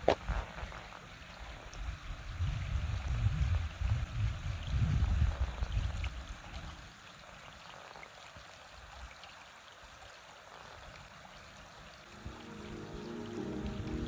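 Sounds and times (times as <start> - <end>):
stream rushing: 12.1 - 14.0.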